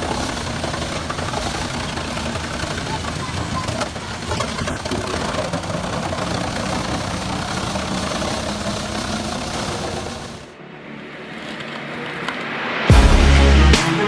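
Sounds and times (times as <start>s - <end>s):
wood chipper engine: 0.0s - 10.5s
rough churning noise: 0.0s - 10.6s.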